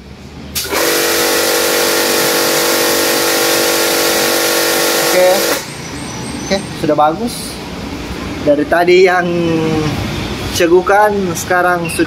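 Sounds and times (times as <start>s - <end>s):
pressure washer spraying: 0.6s - 5.7s.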